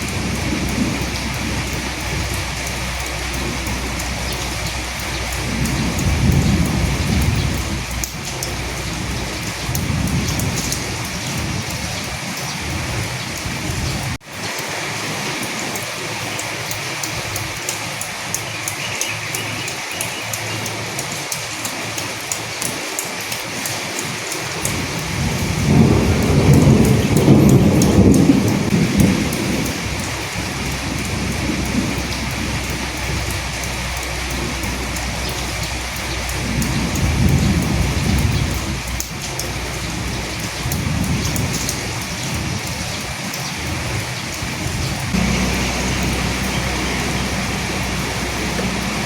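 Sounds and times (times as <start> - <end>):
low rumble: 0.0 - 12.0, 45.1 - 49.0
raindrops ticking on a surface: 0.0 - 49.0
steady rain falling: 0.0 - 49.0.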